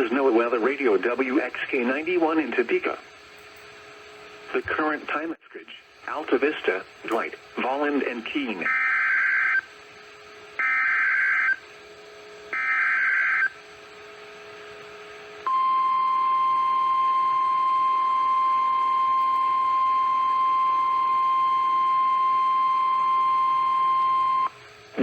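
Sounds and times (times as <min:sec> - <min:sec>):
steady alarm tone: 0:08.6 - 0:09.8, 0:10.6 - 0:11.6, 0:12.4 - 0:13.6, 0:15.4 - 0:24.6.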